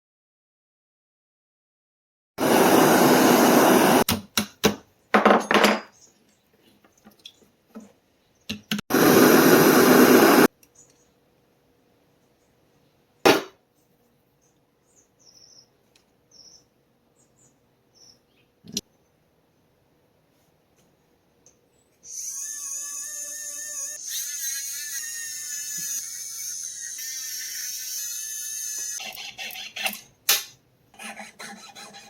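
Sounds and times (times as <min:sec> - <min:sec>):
rushing noise bursts: 0:08.9 - 0:10.5.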